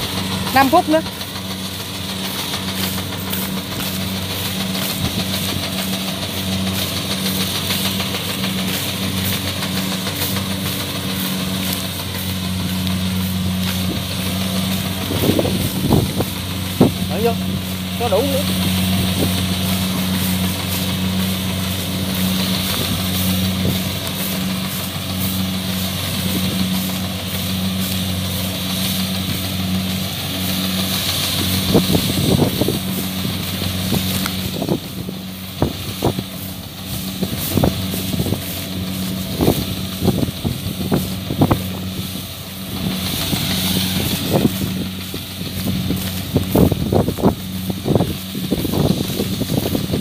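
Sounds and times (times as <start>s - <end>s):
diesel engine running: 0.0s - 50.0s.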